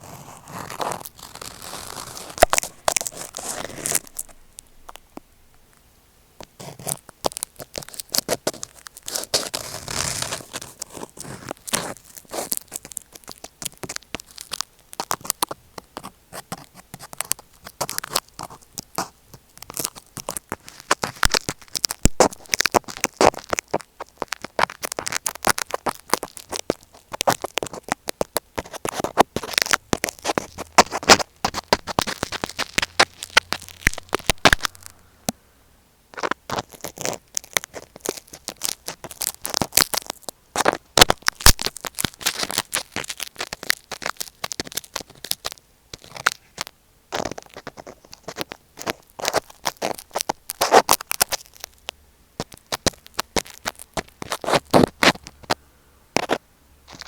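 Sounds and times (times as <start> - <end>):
scratching and tapping on microphone: 0.0 - 5.3, 6.4 - 35.0, 36.2 - 55.6, 56.2 - 57.0.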